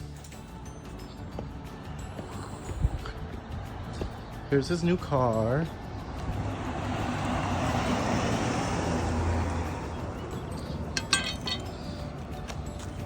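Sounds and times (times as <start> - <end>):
car driving past: 6.1 - 10.6.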